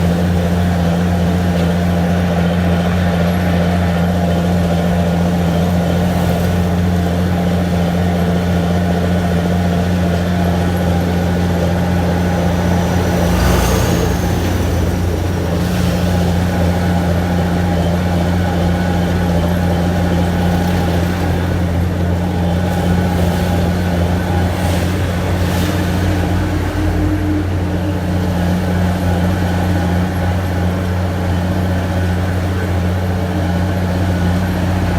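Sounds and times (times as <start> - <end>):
continuous grinding: 0.0 - 34.9
heavy diesel engine humming: 0.0 - 34.9
high-pitched squeal: 10.4 - 20.8.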